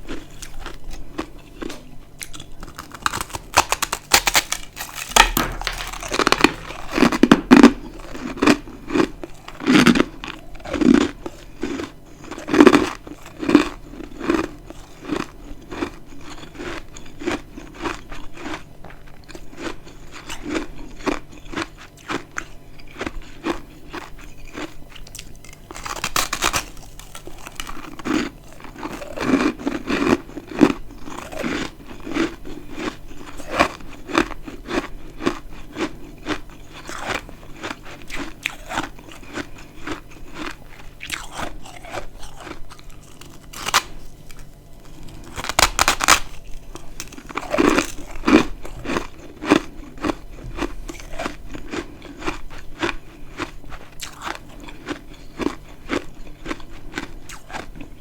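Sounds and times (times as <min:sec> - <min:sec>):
chewing: 0:00.0 - 0:58.0
crunching frost chunks: 0:00.1 - 0:14.4, 0:24.5 - 0:32.3, 0:36.2 - 0:56.0.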